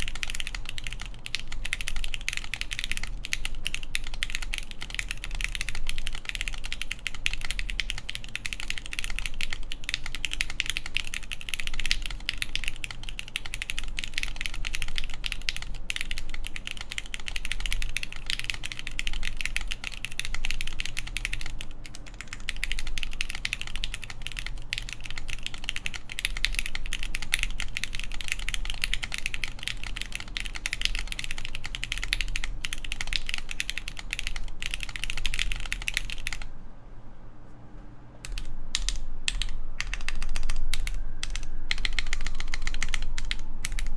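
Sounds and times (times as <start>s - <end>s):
mechanical keyboard typing: 0.0s - 36.5s, 38.2s - 43.9s.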